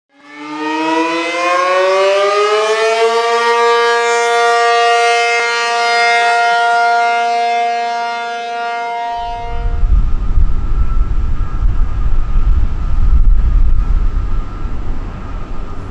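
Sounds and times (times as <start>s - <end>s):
tornado siren wailing: 0.1s - 15.9s
low rumble: 9.2s - 15.9s.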